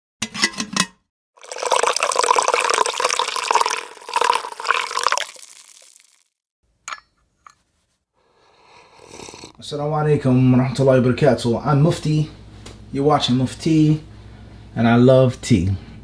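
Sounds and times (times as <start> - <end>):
liquid pouring into vessel: 1.4 - 6.3.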